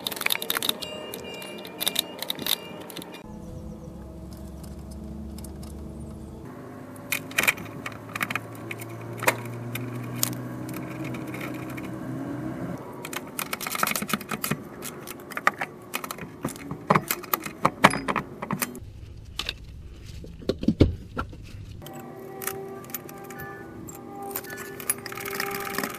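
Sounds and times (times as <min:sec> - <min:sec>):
metal hand tools clattering: 0:13.0 - 0:18.8, 0:21.8 - 0:25.9.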